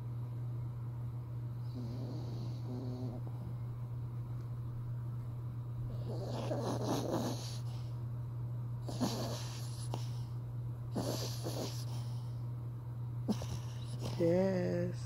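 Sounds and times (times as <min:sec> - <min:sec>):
pet snoring: 0:01.6 - 0:03.6, 0:05.9 - 0:07.9, 0:08.8 - 0:10.3, 0:10.9 - 0:12.3, 0:13.3 - 0:14.5.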